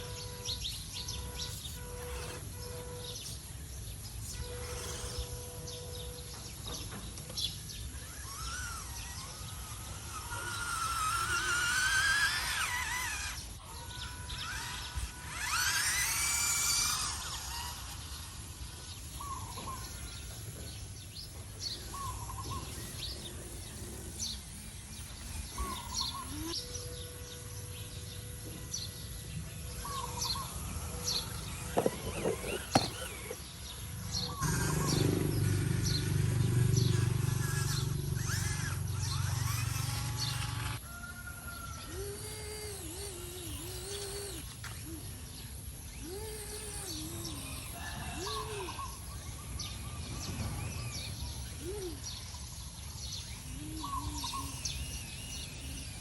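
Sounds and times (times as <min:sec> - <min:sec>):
loud low hum: 0:00.0 - 0:40.8
birds chirping: 0:00.0 - 0:56.0
outdoor background noise: 0:00.0 - 0:56.0.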